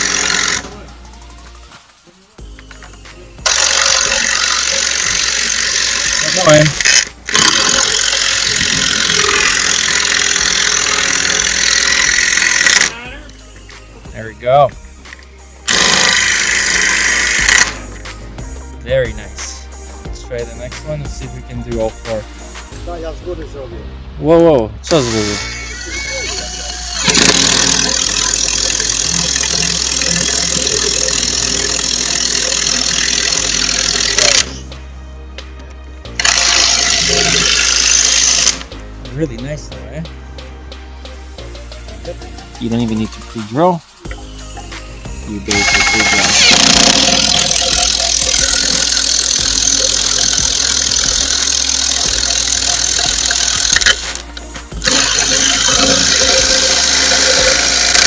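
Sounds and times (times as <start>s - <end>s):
impact wrench hammering: 3.4s - 12.9s, 15.7s - 17.8s, 27.0s - 34.5s, 36.2s - 38.6s, 45.5s - 58.0s.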